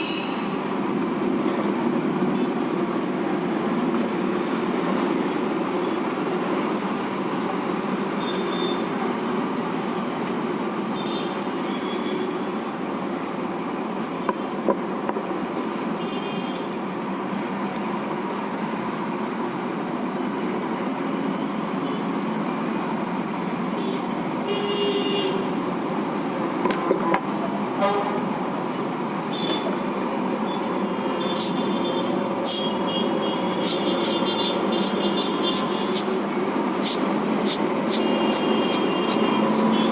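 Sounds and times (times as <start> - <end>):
road traffic noise: 0.0 - 39.9
steady background noise: 0.0 - 39.9
vehicle horns tooting: 36.8 - 39.9.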